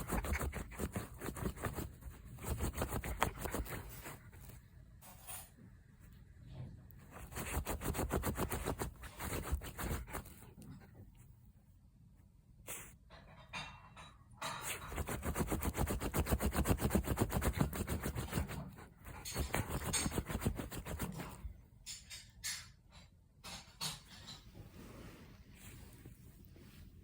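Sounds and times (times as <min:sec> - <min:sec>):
paws scratching fabric: 0:00.0 - 0:04.7, 0:07.0 - 0:11.0, 0:14.6 - 0:21.6.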